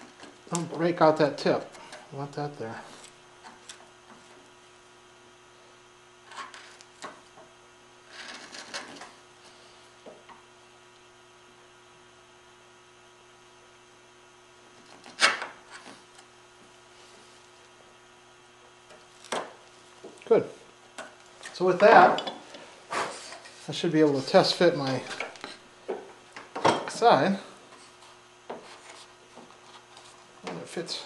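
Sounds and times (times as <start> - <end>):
electrical hum: 0.0 - 31.0
chisel scraping wood: 6.2 - 7.0, 8.0 - 9.1.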